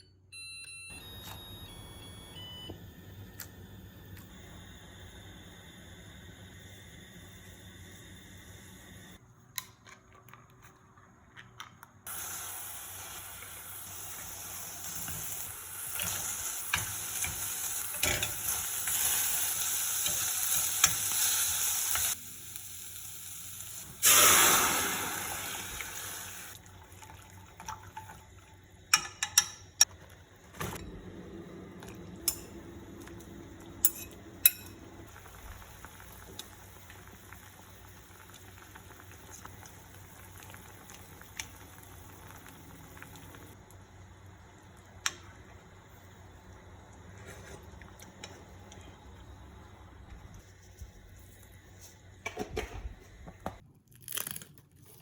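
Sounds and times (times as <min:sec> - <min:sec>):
food sizzling in a pan: 0:12.1 - 0:26.6
loud hiss: 0:24.0 - 0:26.5.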